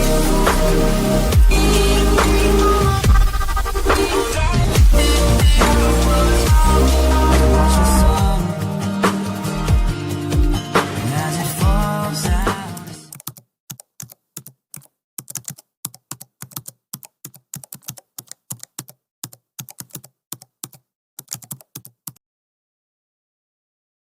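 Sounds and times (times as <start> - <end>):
keyboard typing clicks: 13.1 - 22.2.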